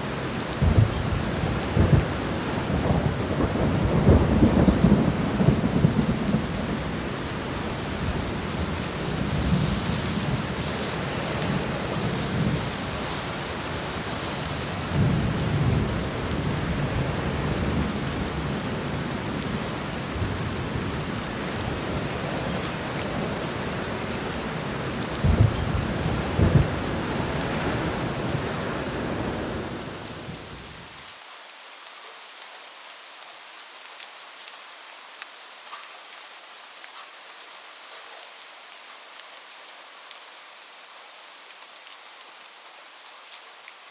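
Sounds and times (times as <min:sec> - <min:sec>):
steady rain: 0:00.0 - 0:43.9
thunder claps: 0:00.6 - 0:30.6
rolling thunder: 0:00.6 - 0:30.7.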